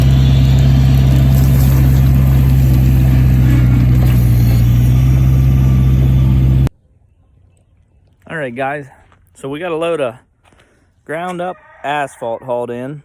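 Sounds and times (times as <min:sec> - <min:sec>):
skid steer engine droning: 0:00.0 - 0:06.7.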